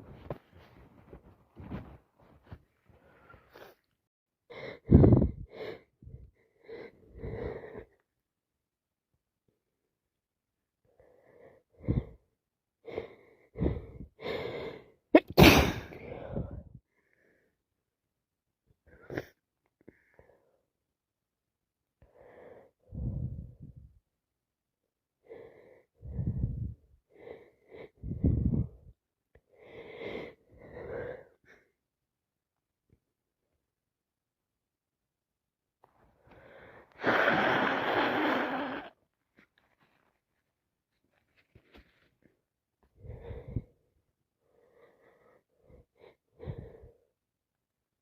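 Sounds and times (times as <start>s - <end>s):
woman blowing her nose: 15.3s - 15.9s, 37.0s - 39.0s
wheezy breaths through nose: 36.3s - 39.0s.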